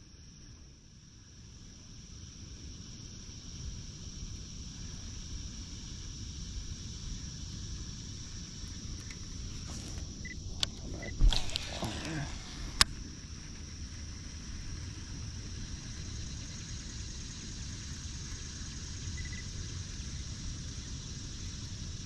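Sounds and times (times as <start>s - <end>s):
high-pitched insect chirring: 15.6s - 22.0s.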